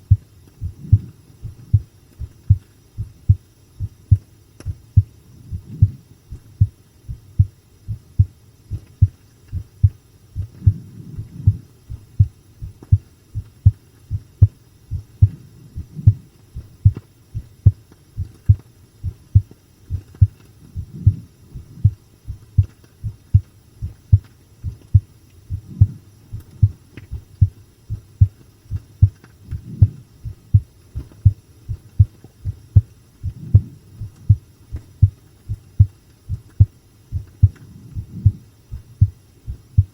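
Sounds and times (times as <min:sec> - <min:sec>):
heartbeat thumps: 0:00.0 - 0:39.9
low hum: 0:00.0 - 0:39.9.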